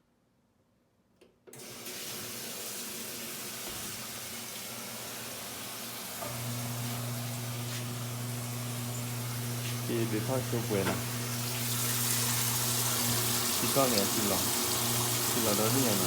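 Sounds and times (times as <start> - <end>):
water rushing in washing machine: 1.5 - 16.0
low motor hum: 6.2 - 13.6.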